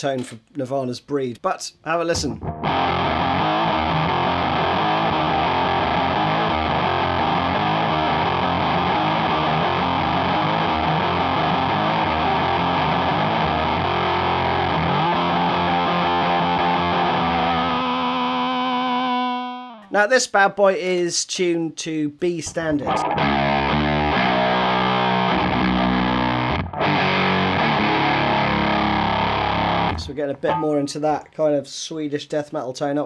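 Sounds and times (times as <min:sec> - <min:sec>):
distorted electric guitar riff: 0:02.1 - 0:19.9, 0:22.5 - 0:30.9.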